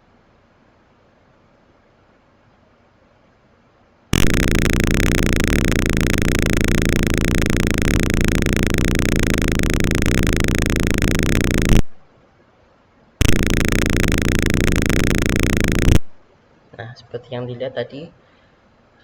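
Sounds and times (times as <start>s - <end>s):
piezo buzzer buzzing: 4.1s - 12.0s, 13.2s - 16.2s.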